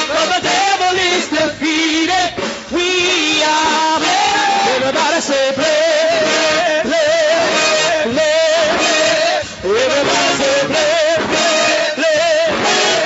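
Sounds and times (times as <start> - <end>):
congregation singing: 0.0 - 13.0
live gospel church music: 0.0 - 13.0.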